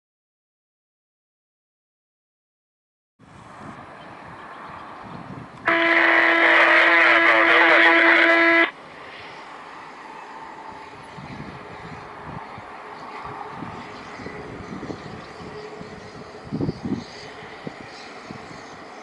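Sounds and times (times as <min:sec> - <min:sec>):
loud horn-like tone: 0:05.7 - 0:08.8.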